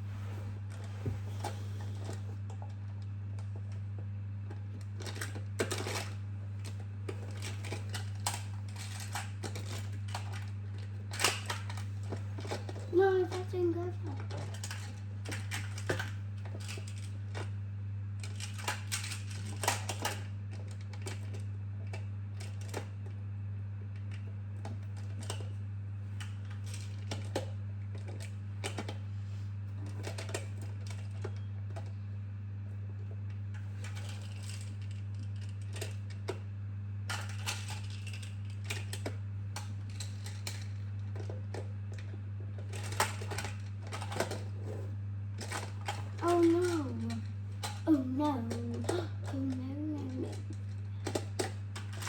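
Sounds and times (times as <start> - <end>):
steady low hum: 0.0 - 2.6.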